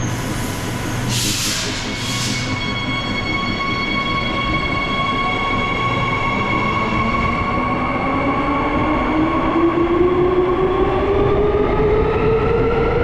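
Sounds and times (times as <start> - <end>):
train electric whine: 0.0 - 13.0
train running rumble: 0.0 - 13.0
air hissing: 0.2 - 2.5.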